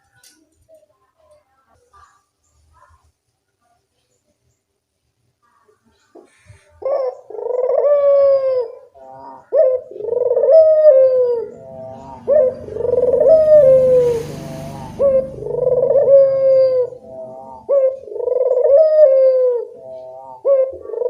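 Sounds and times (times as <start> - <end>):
doves cooing: 6.0 - 21.0.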